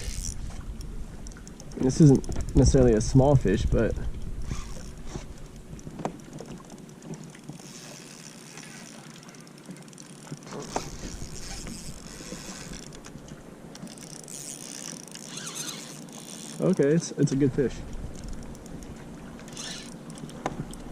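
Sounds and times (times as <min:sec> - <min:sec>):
fishing reel winding: 0:00.0 - 0:00.4, 0:04.4 - 0:05.2, 0:07.6 - 0:13.0, 0:13.8 - 0:16.8, 0:19.5 - 0:20.4
wind noise: 0:00.0 - 0:05.5
water: 0:00.0 - 0:20.9.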